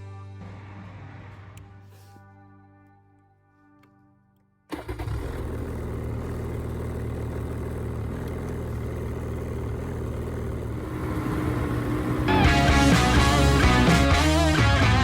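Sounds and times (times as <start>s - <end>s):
snowmobile engine idling: 4.7s - 14.6s.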